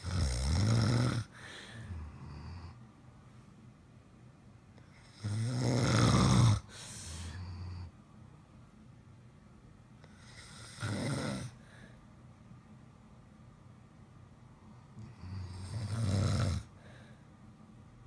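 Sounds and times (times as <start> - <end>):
person snoring: 0.0 - 2.8, 5.0 - 7.9, 10.2 - 11.6, 15.0 - 16.7
soft breath out: 1.3 - 2.3, 6.7 - 7.5.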